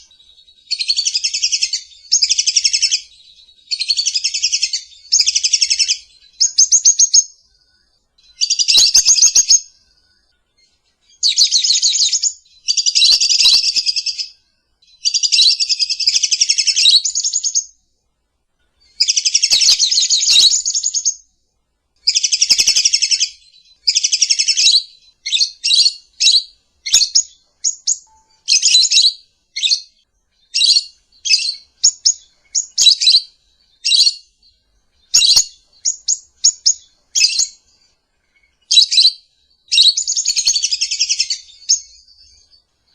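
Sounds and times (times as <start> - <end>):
lovebird chattering trills: 8.2 - 9.7, 11.2 - 14.3, 19.0 - 21.2, 22.1 - 29.9
lovebird quick chirps: 8.2 - 9.7, 11.2 - 14.3, 18.9 - 21.2, 22.0 - 29.9, 35.1 - 37.6.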